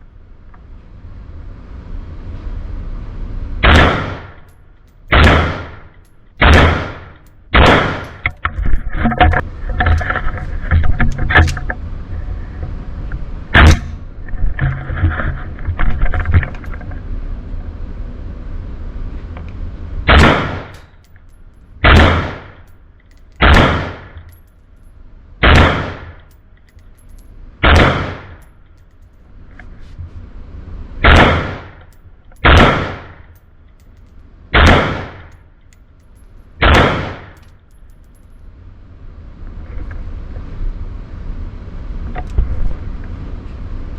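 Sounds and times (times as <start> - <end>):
rifle shots with echo: 3.6 - 4.4, 5.1 - 8.2, 20.1 - 20.7, 21.8 - 22.6, 23.4 - 24.2, 25.4 - 26.2, 27.6 - 28.4, 31.0 - 31.8, 32.4 - 33.2, 34.6 - 35.3, 36.6 - 37.4.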